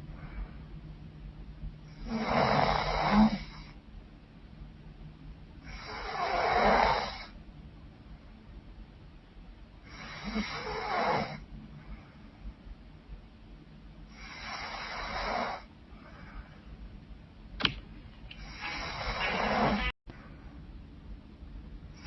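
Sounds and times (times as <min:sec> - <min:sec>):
woman snoring: 0:02.0 - 0:03.6, 0:05.7 - 0:07.3, 0:09.9 - 0:11.4
sharp click: 0:17.6 - 0:18.8.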